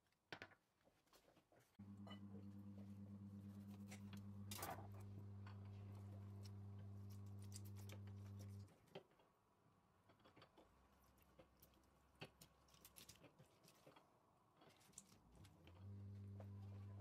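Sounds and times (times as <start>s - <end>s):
steady low hum: 1.8s - 8.8s.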